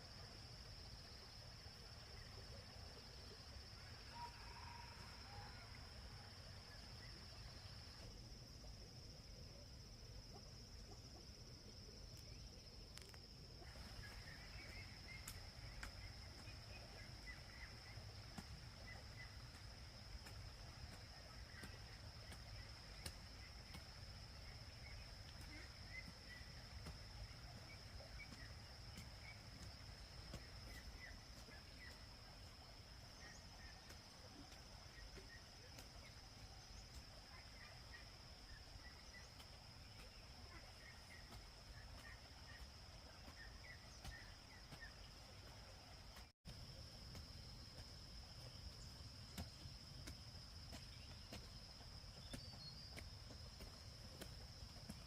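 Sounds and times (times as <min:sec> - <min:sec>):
faint chirps: 0:06.6 - 0:46.3.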